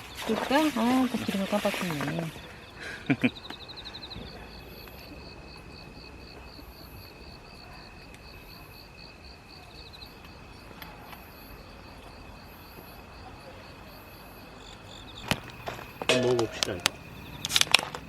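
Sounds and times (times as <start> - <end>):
insects trilling: 0.0 - 18.0.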